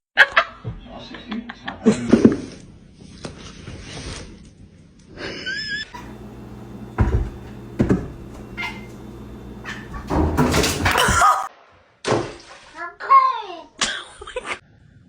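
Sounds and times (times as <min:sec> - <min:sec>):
soft knocks: 0:06.0 - 0:11.2
low steady hum: 0:06.0 - 0:11.5.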